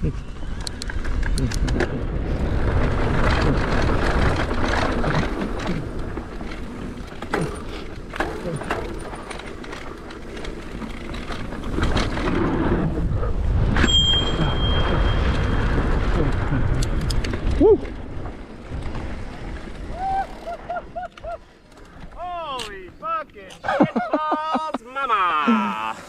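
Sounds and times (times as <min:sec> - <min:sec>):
bike rattling: 0:00.0 - 0:24.1
bike tyres on dirt: 0:00.1 - 0:23.5
short high squeal: 0:13.8 - 0:15.6.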